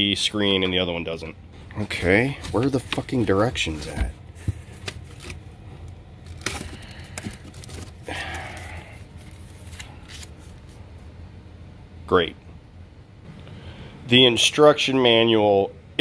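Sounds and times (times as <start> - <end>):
low steady hum: 0.0 - 16.0
paper or plastic rustling: 1.8 - 5.5, 6.2 - 10.8
clicks and scrapes of handled items: 6.2 - 10.8.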